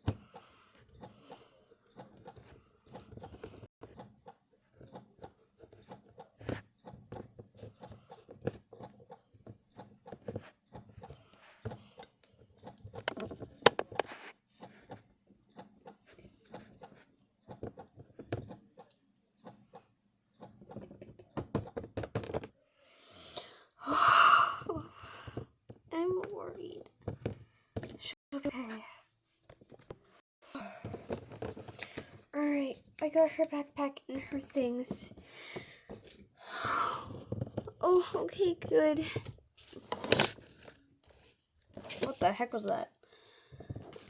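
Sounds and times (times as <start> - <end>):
plastic toys tapping on a surface: 20.4 - 22.5.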